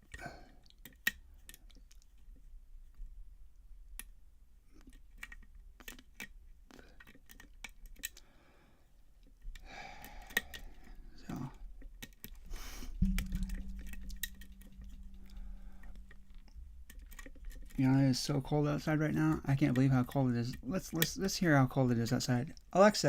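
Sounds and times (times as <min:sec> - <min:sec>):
lock picks clicking in a lock: 0:04.9 - 0:06.4, 0:07.0 - 0:08.2
low steady hum: 0:12.5 - 0:20.7
thump: 0:13.0 - 0:16.2.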